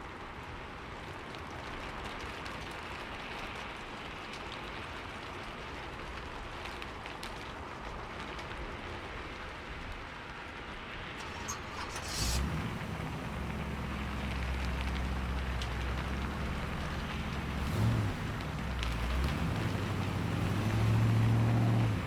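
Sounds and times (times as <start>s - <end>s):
rain on wet street: 0.0s - 22.0s
motor vehicle engine humming: 11.2s - 22.0s.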